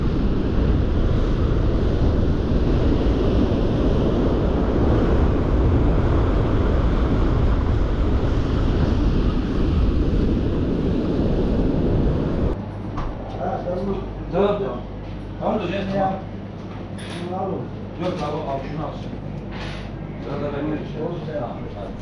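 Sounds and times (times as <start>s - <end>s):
breaking surf: 0.0s - 12.6s
wind blowing across microphone: 0.0s - 12.6s.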